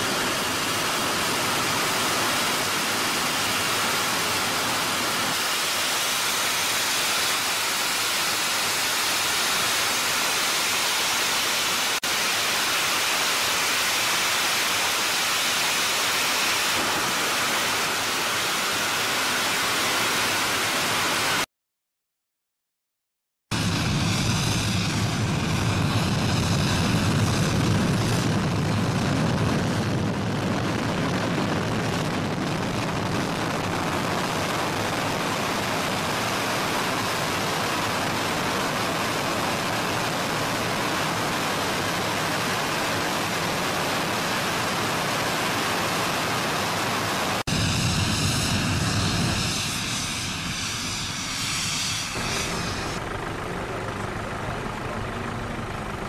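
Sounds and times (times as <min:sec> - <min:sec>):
swirling phasing jet noise: 0:00.0 - 0:21.4, 0:23.5 - 0:56.0
jet engine rushing: 0:00.0 - 0:21.5, 0:23.5 - 0:56.0.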